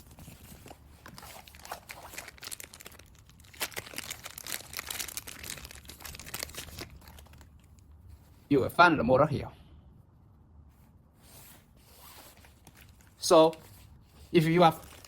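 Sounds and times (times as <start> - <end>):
rustling and crinkling: 0.0 - 8.5, 10.7 - 15.0.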